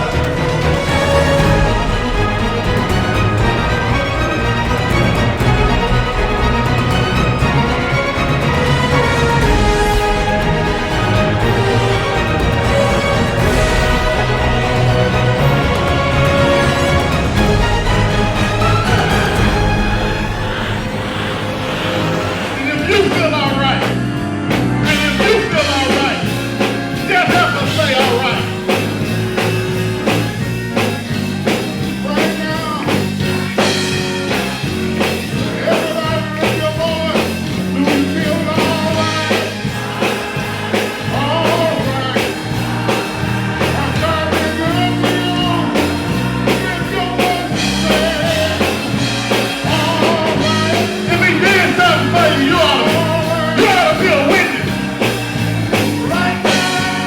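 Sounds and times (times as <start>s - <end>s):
drum beat: 0.0s - 21.4s, 22.6s - 57.0s
band playing: 0.0s - 57.0s
bass notes: 0.0s - 57.0s
person singing: 35.4s - 54.8s, 56.0s - 57.0s.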